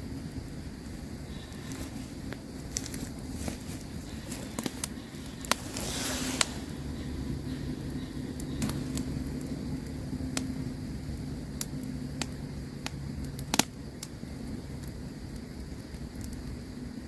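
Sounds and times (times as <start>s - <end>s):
campfire crackling and popping: 0.0s - 17.0s
low rumble of fire: 0.0s - 17.0s.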